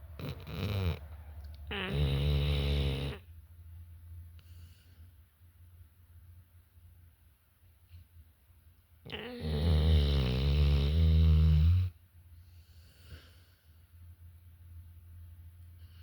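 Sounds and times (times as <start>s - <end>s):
loud snoring: 0.2s - 1.1s, 1.7s - 3.3s, 9.1s - 11.9s
quiet breathing: 4.2s - 5.4s, 11.8s - 14.3s, 15.6s - 16.0s.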